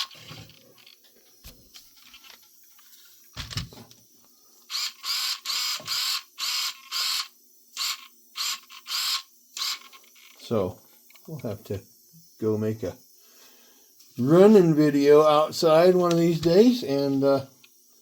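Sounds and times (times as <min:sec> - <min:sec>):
steering servo whirring: 0:04.7 - 0:10.4.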